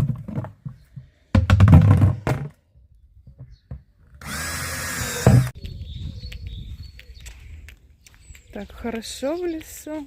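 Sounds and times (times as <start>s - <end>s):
power drill whining: 4.2s - 5.6s.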